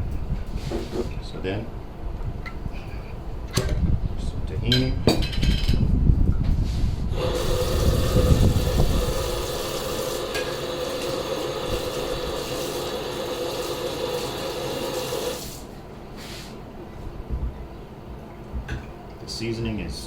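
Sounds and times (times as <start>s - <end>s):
low rumbling of blender contents: 6.6s - 20.0s
blender motor running: 7.1s - 15.6s.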